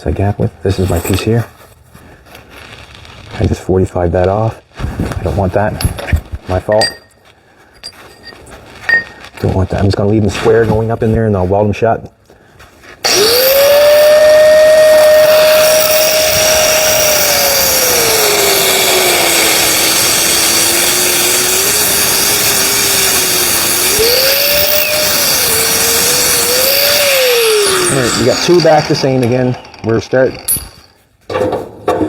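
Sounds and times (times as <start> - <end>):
power tool motor whine: 13.0 - 31.0.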